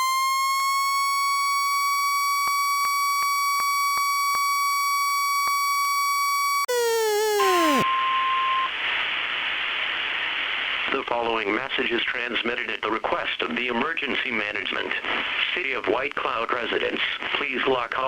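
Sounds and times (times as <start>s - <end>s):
siren at steady pitch: 0.0s - 8.6s
steady beep: 6.7s - 8.7s.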